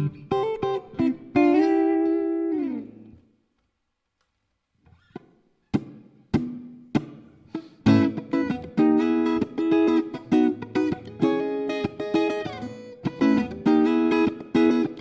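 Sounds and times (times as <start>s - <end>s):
plucked guitar notes: 0.0s - 3.2s, 5.0s - 15.0s
strummed guitar chords: 5.8s - 15.0s.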